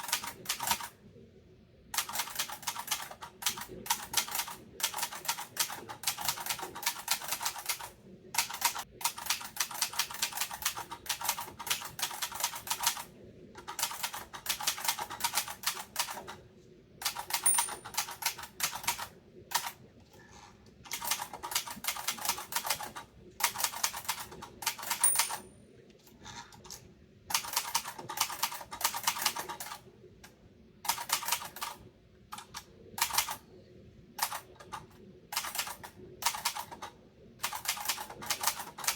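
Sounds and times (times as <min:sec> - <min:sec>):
typewriter key strikes: 0:17.1 - 0:18.4, 0:23.5 - 0:25.4
typewriter bell ping: 0:17.4 - 0:18.1, 0:24.8 - 0:25.5.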